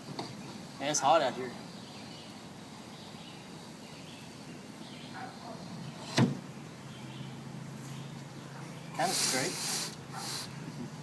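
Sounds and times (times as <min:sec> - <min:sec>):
low steady background noise: 0:00.0 - 0:11.0.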